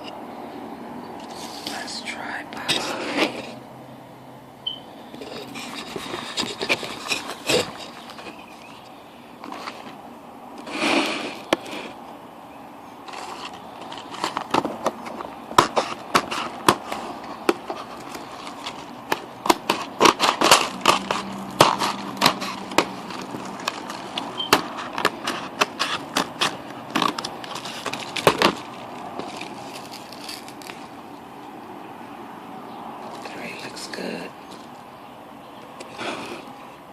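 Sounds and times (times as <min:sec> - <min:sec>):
cardboard box clicking and crackling: 0:05.2 - 0:10.0, 0:13.0 - 0:31.0.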